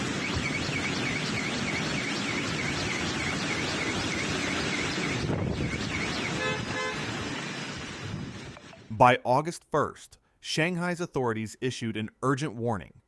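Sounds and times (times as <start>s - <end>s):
car alarm chirping: 0.0s - 7.0s
storm wind and rain: 0.0s - 8.7s.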